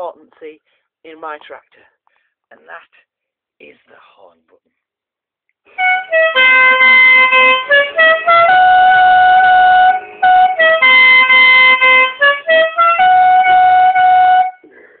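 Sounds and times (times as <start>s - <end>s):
musical air horns playing tune: 5.7s - 14.7s.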